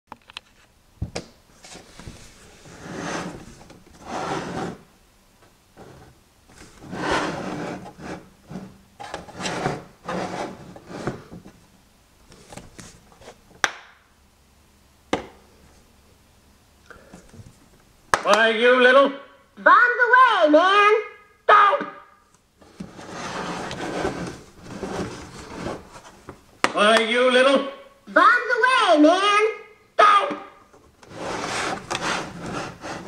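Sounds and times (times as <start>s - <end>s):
rubbing and scraping: 1.6s - 4.8s, 5.8s - 11.3s, 22.6s - 26.4s, 31.0s - 33.0s.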